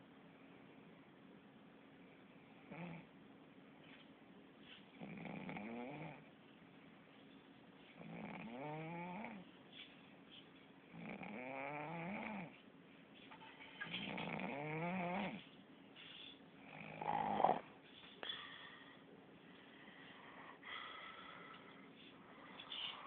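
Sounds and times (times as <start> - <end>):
person snoring: 14.0 - 15.4, 16.7 - 17.7.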